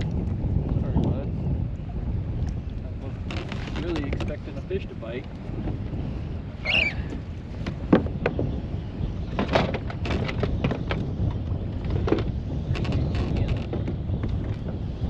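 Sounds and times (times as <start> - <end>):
water slapping against hull: 0.0 - 8.6, 9.2 - 15.0
wind buffeting microphone: 0.0 - 15.0.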